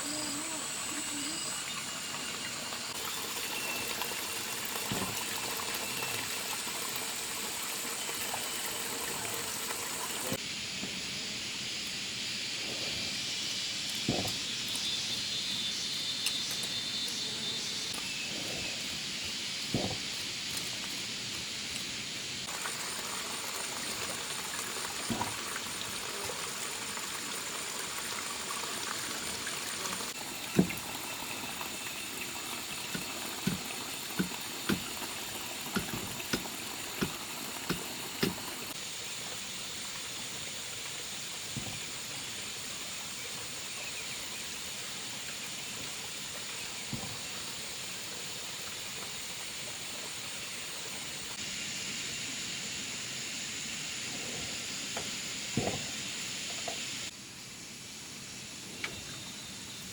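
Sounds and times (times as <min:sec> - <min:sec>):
steady high hiss: 0:10.2 - 0:27.0, 0:49.4 - 0:59.9
sharp knocks: 0:14.1 - 0:14.4, 0:19.7 - 0:20.1, 0:30.6 - 0:30.9, 0:33.0 - 0:35.0, 0:35.7 - 0:38.4.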